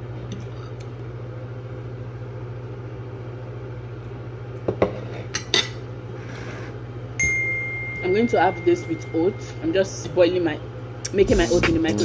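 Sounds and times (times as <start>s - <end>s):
low appliance hum: 0.0s - 12.0s.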